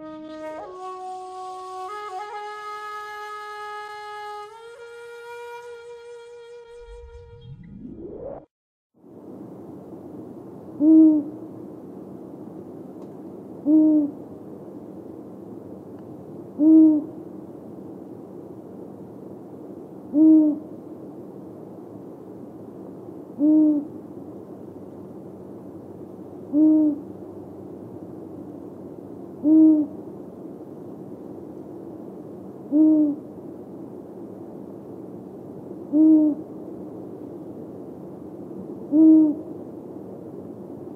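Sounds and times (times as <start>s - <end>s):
faint steady background noise: 0.0s - 6.7s, 9.0s - 40.9s
owl hooting: 10.8s - 11.4s, 13.6s - 14.2s, 16.6s - 17.2s, 20.1s - 20.7s, 23.4s - 23.9s, 26.5s - 27.1s, 29.4s - 30.0s, 32.7s - 33.3s, 35.9s - 36.5s, 38.9s - 39.5s.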